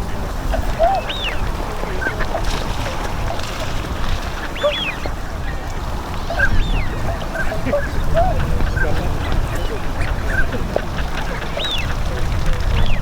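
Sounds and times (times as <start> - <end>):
swans honking: 0.0 - 13.0
high arched swan calls: 0.4 - 12.3.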